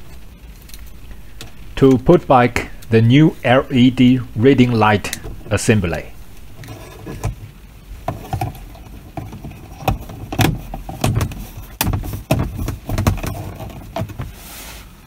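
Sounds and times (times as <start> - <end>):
reading light clicks and knocks: 8.1 - 14.4.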